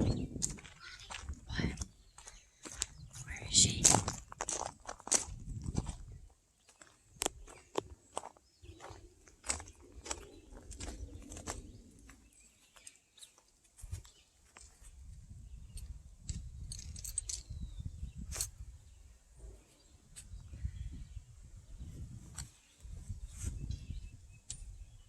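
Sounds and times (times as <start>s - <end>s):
low rumble: 0.0s - 0.7s
footsteps on dirt trail: 0.0s - 14.9s.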